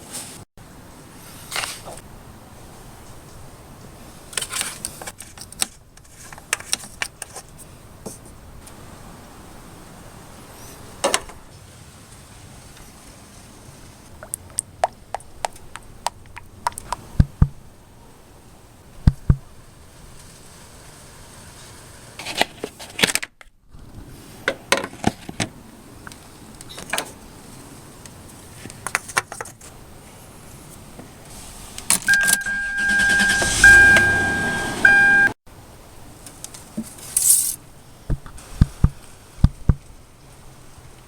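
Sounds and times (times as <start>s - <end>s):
two-tone vehicle chime: 32.1s - 35.4s
rush of noise: 32.7s - 35.4s.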